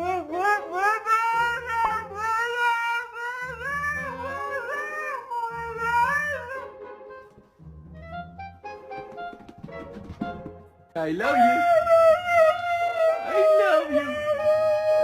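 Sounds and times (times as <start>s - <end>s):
dog howling: 0.0s - 6.6s, 11.3s - 15.0s.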